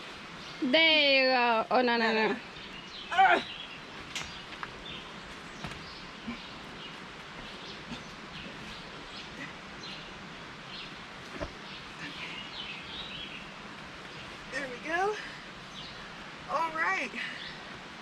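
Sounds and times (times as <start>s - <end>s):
birds chirping: 0.0s - 18.0s
steady background hiss: 0.0s - 18.0s.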